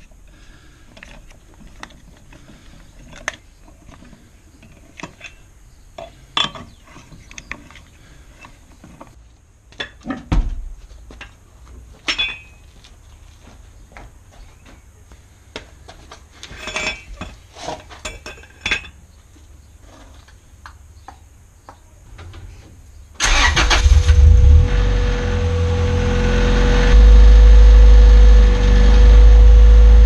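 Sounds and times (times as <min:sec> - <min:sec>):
tools and metal parts clinking: 0:06.0 - 0:07.8, 0:12.1 - 0:12.6, 0:16.5 - 0:19.0.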